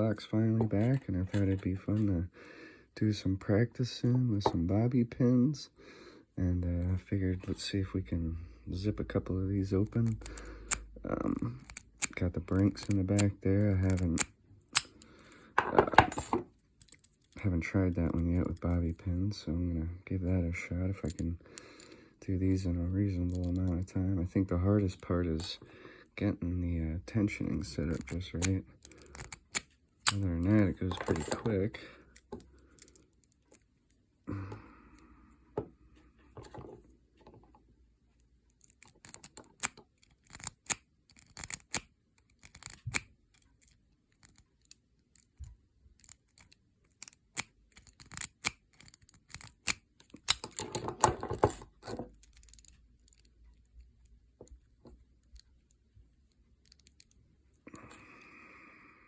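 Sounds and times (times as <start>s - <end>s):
padlock clattering: 9.6s - 17.4s, 27.7s - 33.7s, 38.5s - 57.2s
small metallic clicks in lock: 9.8s - 15.4s, 27.9s - 30.3s, 38.5s - 53.3s.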